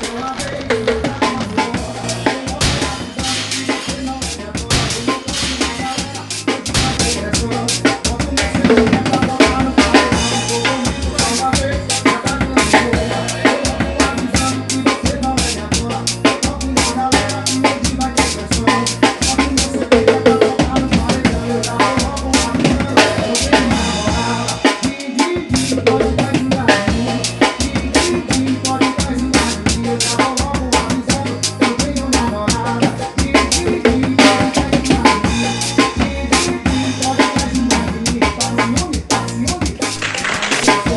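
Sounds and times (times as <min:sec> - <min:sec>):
bass drum and snare hits: 0:00.0 - 0:05.9, 0:06.6 - 0:17.3
heavy bass line: 0:00.0 - 0:40.9.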